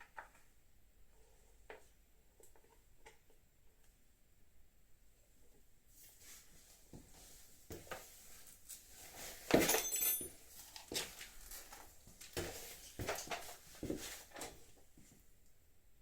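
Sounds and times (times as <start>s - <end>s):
sharp metallic clink: 9.6s - 10.4s.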